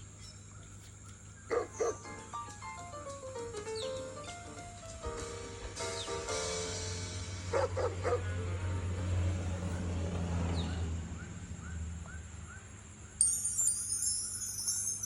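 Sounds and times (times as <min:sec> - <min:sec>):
dog barking: 0:01.5 - 0:02.0, 0:07.5 - 0:08.4.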